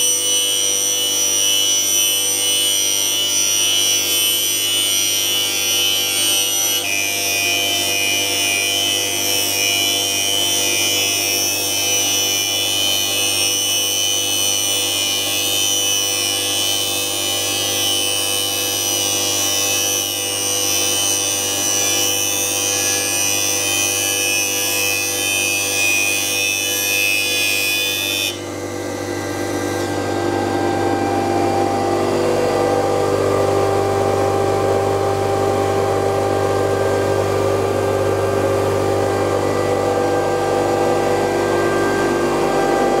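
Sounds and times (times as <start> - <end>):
motor whine: 27.1 - 43.0.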